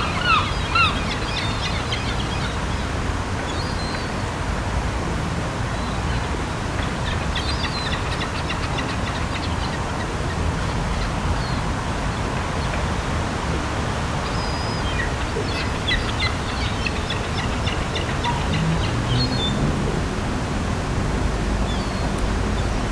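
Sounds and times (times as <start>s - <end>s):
gulls calling: 0.0s - 4.0s, 14.1s - 19.6s.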